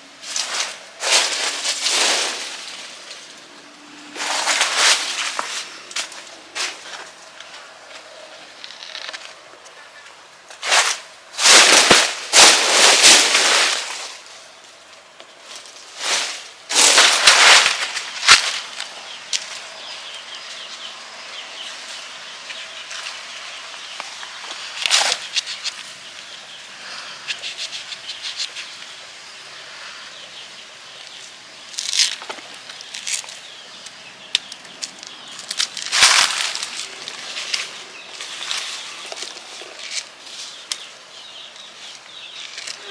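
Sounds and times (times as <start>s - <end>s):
rustling flapping bursts: 10.6s - 14.2s, 16.0s - 18.7s.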